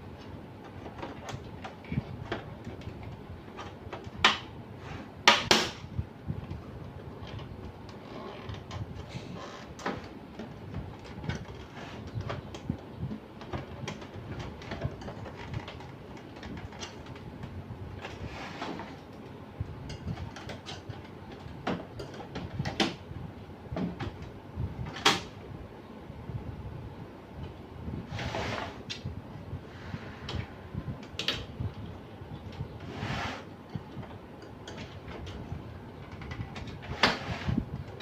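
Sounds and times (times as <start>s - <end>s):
scraping rustle: 11.4s - 12.4s, 18.0s - 19.1s, 28.0s - 28.9s, 32.6s - 33.9s, 36.2s - 38.0s.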